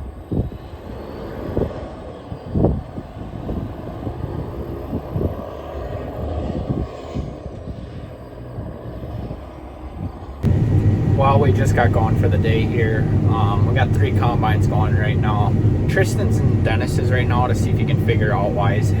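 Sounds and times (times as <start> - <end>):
wind buffeting microphone: 0.0 - 19.0
combine harvester running: 10.4 - 19.0.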